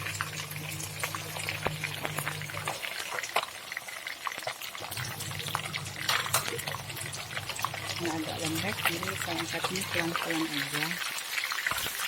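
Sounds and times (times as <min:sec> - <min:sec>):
fish sizzling in hot oil: 0:00.0 - 0:12.0.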